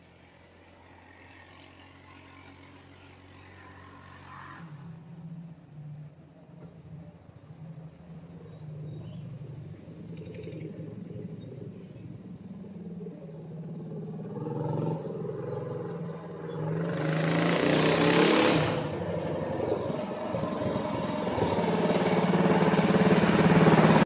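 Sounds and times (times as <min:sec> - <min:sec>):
mini bike engine revving: 0:13.6 - 0:24.0.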